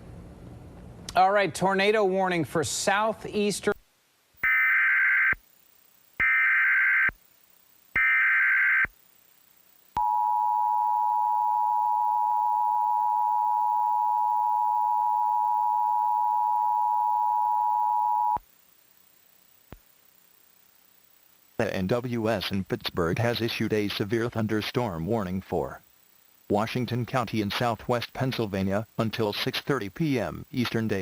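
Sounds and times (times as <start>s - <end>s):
digital data bursts: 4.4s - 5.4s, 6.2s - 7.2s, 7.9s - 9.0s
two-tone attention signal: 10.0s - 18.4s.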